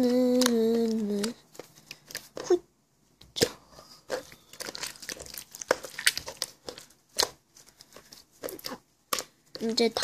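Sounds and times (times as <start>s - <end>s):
slime crackling and popping: 4.5s - 7.4s.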